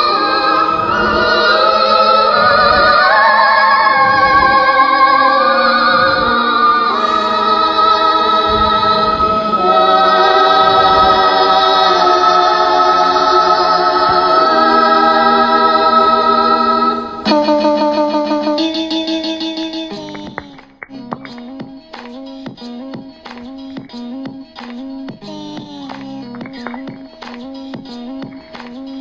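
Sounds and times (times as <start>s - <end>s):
choral singing with long notes: 0.0s - 20.2s.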